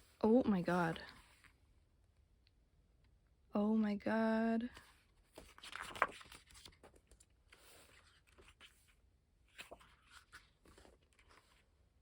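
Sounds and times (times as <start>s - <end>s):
pages turning: 4.8s - 11.7s
paper rustling: 4.8s - 11.7s.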